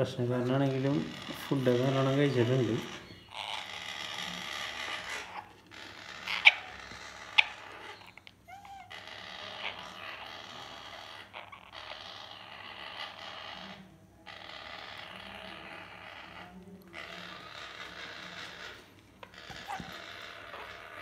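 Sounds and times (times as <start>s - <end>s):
parrot squawks: 0.5s - 21.0s
parrot chick raspy hissing calls: 2.8s - 21.0s
short squeaky call: 14.6s - 21.0s.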